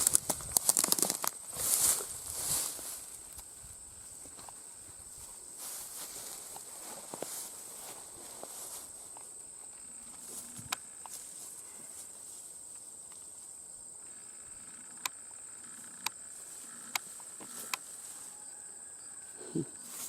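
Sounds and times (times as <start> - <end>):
crickets chirring: 0.0 - 20.0
sharp clicks: 14.7 - 16.2.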